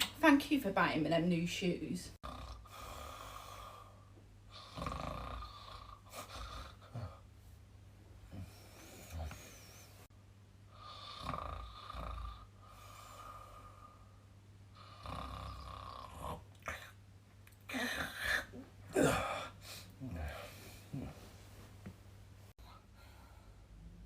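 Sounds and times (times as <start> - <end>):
man snoring with whistling: 4.5 - 6.0, 10.8 - 12.4, 14.9 - 16.3.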